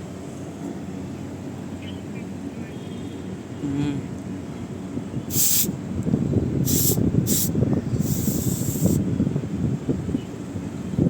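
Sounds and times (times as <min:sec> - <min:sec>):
refrigerant gas hissing: 0:05.3 - 0:05.7, 0:06.6 - 0:09.0.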